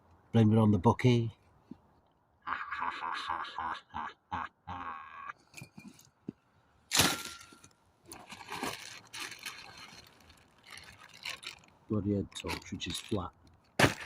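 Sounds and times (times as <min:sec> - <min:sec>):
camping kit rustling and knocking: 0:05.5 - 0:14.0
sharp crack: 0:13.8 - 0:14.0.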